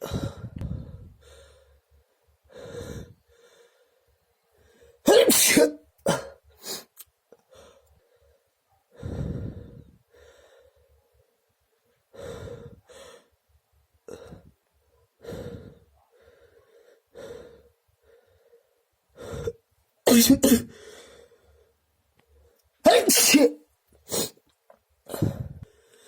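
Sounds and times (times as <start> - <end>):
sharp noisy breaths and gasps: 0.0 - 1.9, 2.5 - 5.0, 6.6 - 11.0, 12.1 - 13.4, 15.2 - 19.6, 25.1 - 26.0
person sneezing: 5.1 - 6.9, 20.1 - 20.7, 22.9 - 24.4.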